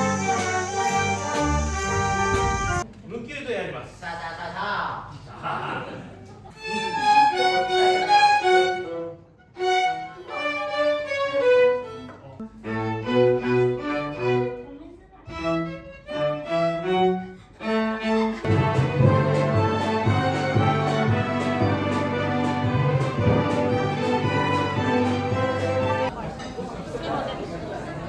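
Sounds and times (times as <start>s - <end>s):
lower strings ensemble: 0.0s - 2.8s, 15.3s - 26.1s
violins playing a melody: 0.0s - 2.8s, 6.5s - 26.1s.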